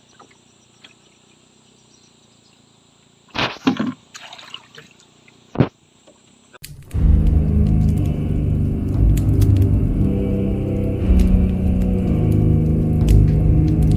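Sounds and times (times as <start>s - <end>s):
faint outdoor background: 0.0s - 13.9s
water splashing: 3.3s - 5.5s.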